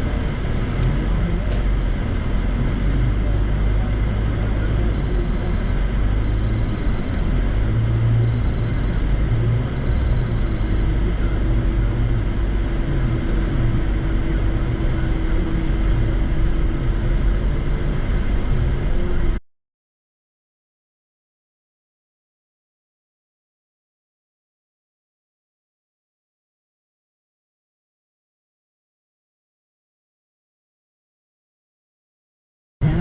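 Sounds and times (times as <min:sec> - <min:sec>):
car road and engine rumble: 0:00.0 - 0:19.4
high-pitched beeps: 0:04.9 - 0:07.3, 0:08.2 - 0:09.1, 0:09.8 - 0:11.0.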